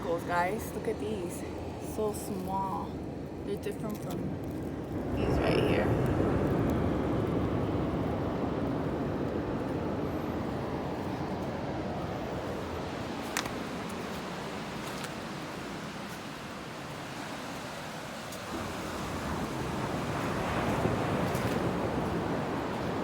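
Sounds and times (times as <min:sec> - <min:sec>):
ocean surf rushing: 0:05.0 - 0:23.0.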